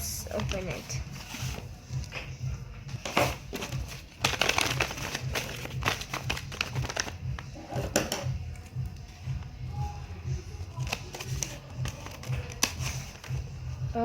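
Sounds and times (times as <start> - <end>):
paper bag crinkling: 3.2 - 7.3.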